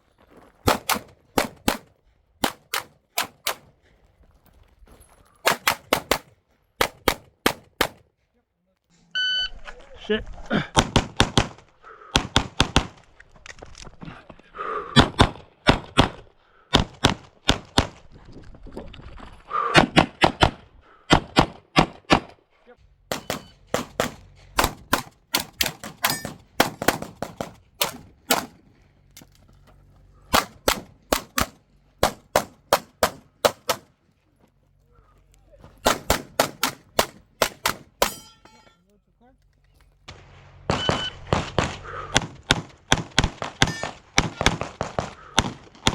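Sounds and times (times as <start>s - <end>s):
rapid pistol fire: 0.7s - 3.6s, 5.5s - 8.0s, 10.8s - 13.0s, 23.1s - 28.6s, 30.3s - 33.9s, 35.8s - 38.1s, 40.1s - 45.9s.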